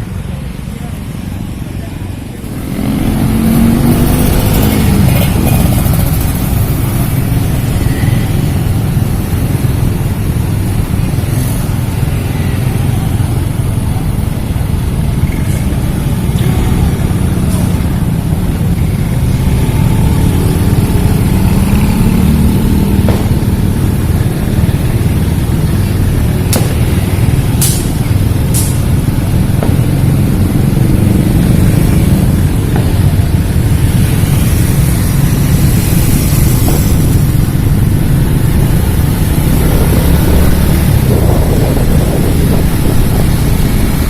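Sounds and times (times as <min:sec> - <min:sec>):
car engines passing: 0:00.0 - 0:44.0
motorcycle engines passing: 0:00.0 - 0:44.0.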